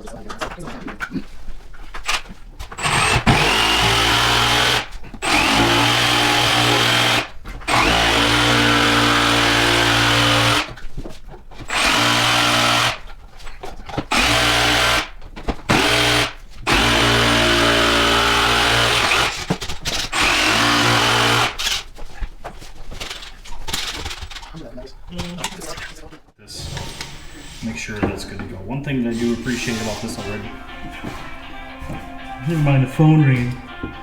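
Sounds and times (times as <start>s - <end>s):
power drill drilling wood: 2.8s - 10.8s, 11.7s - 13.0s, 14.1s - 21.9s.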